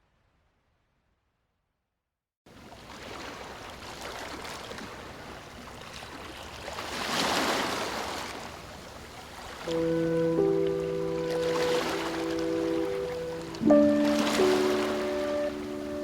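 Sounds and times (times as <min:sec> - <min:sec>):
water rushing: 0:09.4 - 0:16.0.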